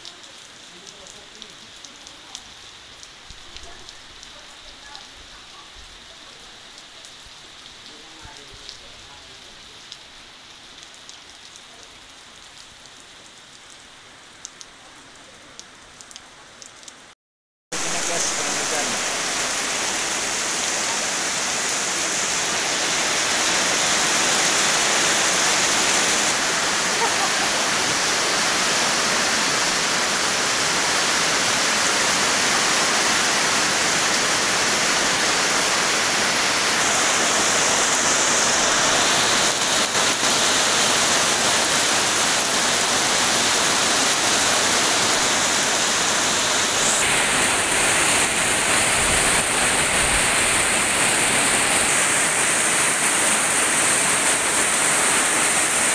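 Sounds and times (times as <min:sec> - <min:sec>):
heavy rain in strong wind: 0:17.7 - 0:55.9.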